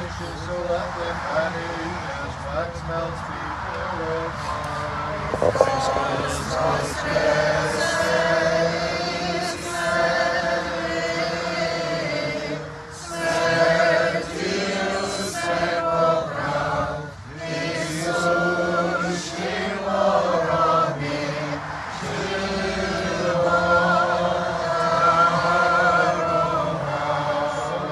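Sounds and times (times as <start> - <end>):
congregation and choir chanting a hymn: 0.0 - 27.9.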